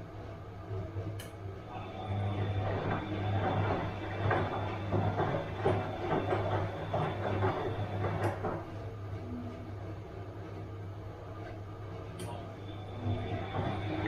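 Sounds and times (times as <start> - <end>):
washing machine hum: 0.0 - 14.0
drum and load clattering: 2.4 - 8.8, 13.1 - 14.0.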